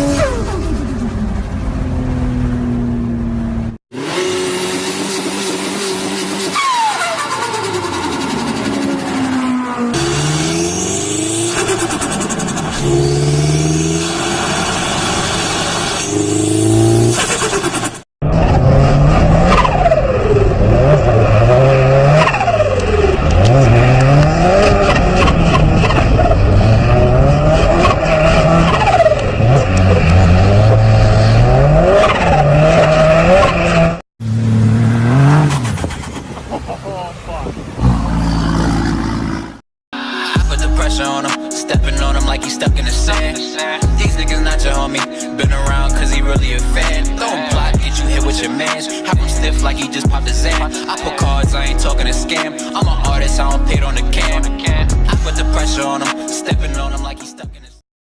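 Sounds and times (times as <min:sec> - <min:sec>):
car engine revving: 0:00.0 - 0:36.8, 0:37.5 - 0:39.6
tyres squealing: 0:04.9 - 0:08.4.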